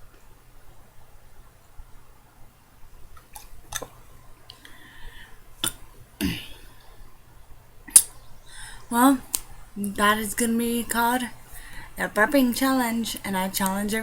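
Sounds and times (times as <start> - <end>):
woman burping: 5.6 - 6.8.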